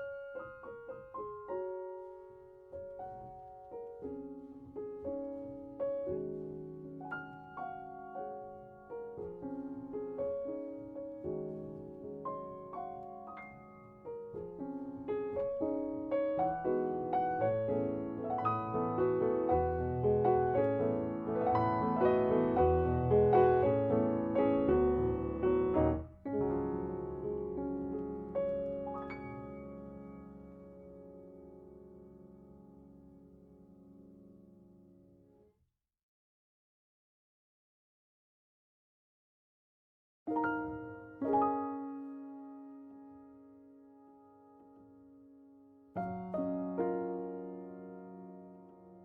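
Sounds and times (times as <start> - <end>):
piano music: 0.0 - 35.4, 40.3 - 49.0.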